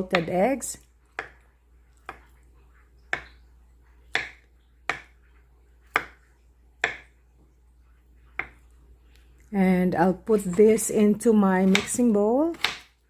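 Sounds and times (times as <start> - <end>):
knife chopping on cutting board: 0.0 - 0.5, 1.1 - 1.4, 4.1 - 5.2, 5.9 - 7.1, 8.4 - 8.6, 11.6 - 13.0.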